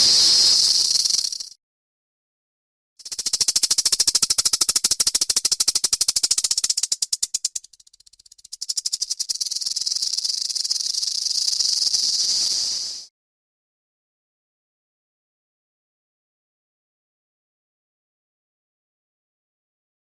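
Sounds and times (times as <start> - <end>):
rattlesnake tail rattling: 0.0 - 1.6, 3.0 - 13.1.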